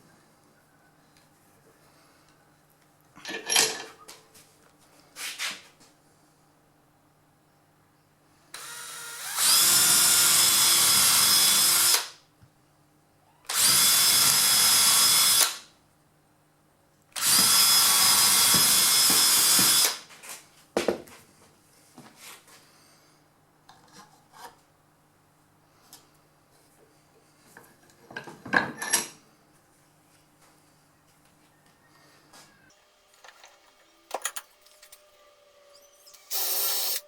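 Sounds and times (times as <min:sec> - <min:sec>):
power drill boring: 0:08.6 - 0:12.1, 0:13.5 - 0:15.6, 0:17.2 - 0:20.0, 0:32.7 - 0:37.0.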